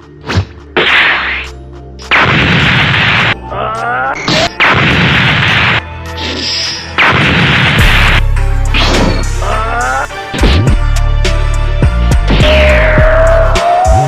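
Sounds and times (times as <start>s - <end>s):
music: 0.0s - 14.0s.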